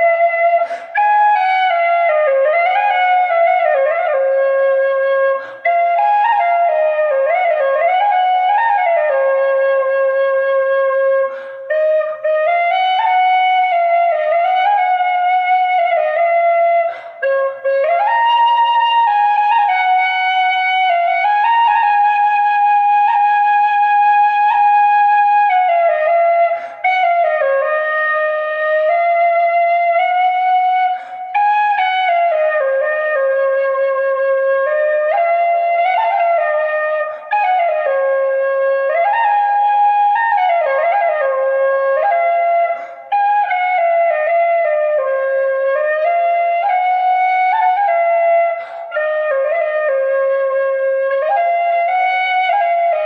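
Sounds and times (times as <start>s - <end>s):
solo flute melody: 0.0s - 53.0s.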